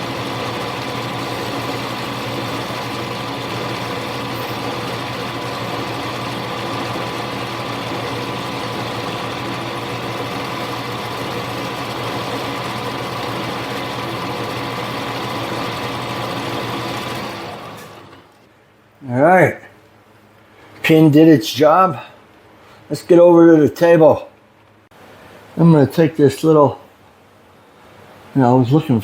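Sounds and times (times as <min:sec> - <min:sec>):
metal lathe running: 0:00.0 - 0:18.3.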